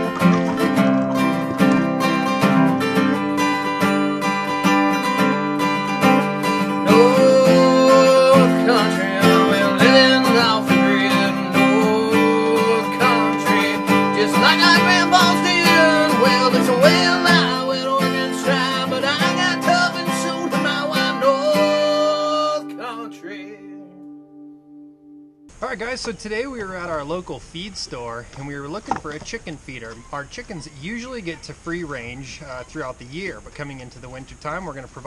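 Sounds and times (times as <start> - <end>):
plucked acoustic guitar: 0.0 - 25.5.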